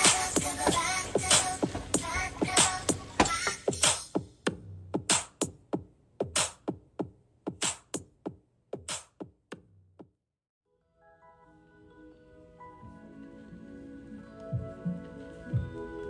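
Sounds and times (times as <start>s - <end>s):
drum machine beat: 0.0s - 10.1s.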